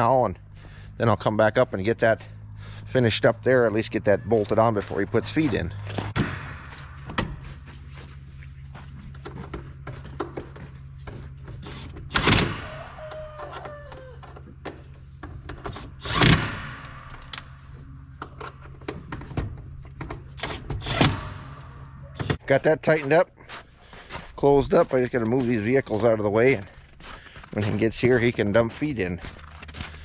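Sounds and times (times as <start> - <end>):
heavy thuds: 5.3 - 8.3.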